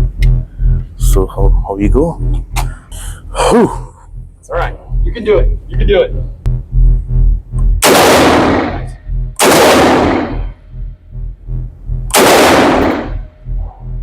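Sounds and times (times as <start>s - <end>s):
rifle shots with echo: 7.8s - 10.5s, 12.1s - 13.3s.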